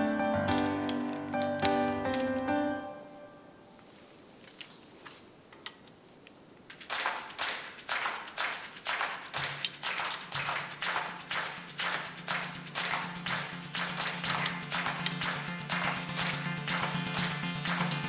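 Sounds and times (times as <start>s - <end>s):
socket ratchet ratcheting: 0.5s - 2.5s.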